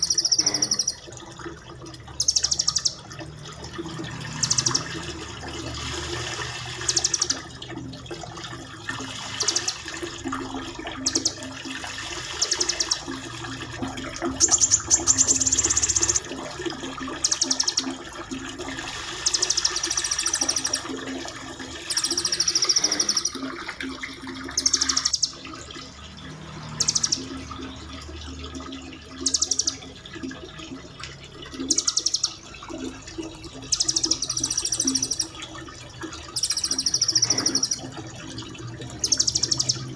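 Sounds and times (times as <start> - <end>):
songbirds trilling: 0.0 - 1.1, 2.1 - 3.1, 4.0 - 5.1, 6.8 - 7.4, 11.0 - 13.6, 14.2 - 16.2, 17.1 - 18.0, 21.7 - 23.5, 24.5 - 25.4, 26.6 - 27.6, 33.6 - 35.4, 36.3 - 38.1, 38.9 - 39.9
running water: 0.0 - 39.9.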